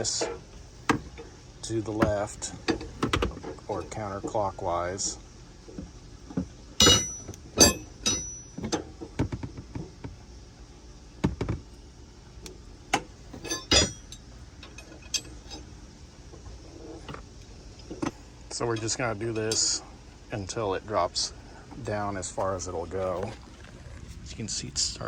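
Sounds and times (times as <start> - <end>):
metal tool clanking and clicking: 6.8 - 8.8, 13.3 - 15.7.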